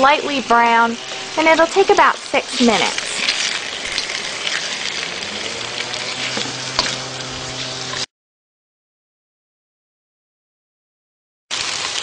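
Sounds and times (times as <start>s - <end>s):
chicken sizzling in hot oil: 0.0s - 8.1s, 11.5s - 12.0s.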